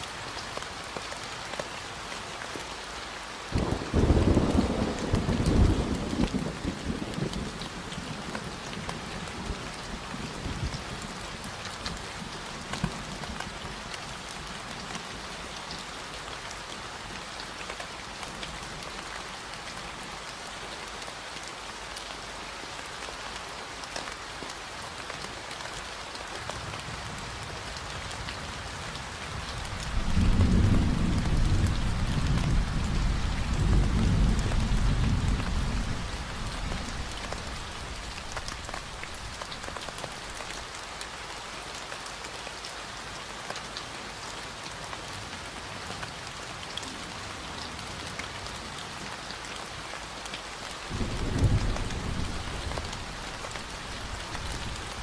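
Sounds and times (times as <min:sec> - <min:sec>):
steady rain: 0:00.0 - 0:55.0
thunder rumbling: 0:29.7 - 0:39.2, 0:50.9 - 0:55.0.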